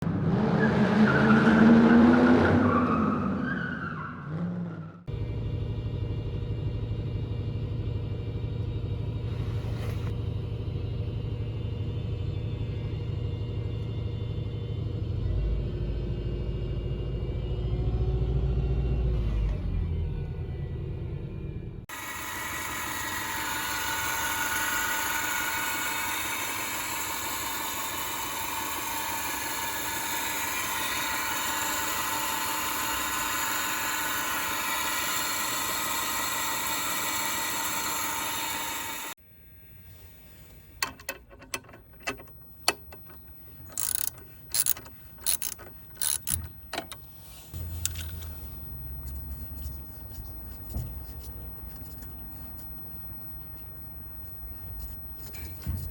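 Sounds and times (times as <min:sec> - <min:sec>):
engine running with whine: 0:00.0 - 0:55.9
sharp clicks and knocks: 0:40.8 - 0:47.1.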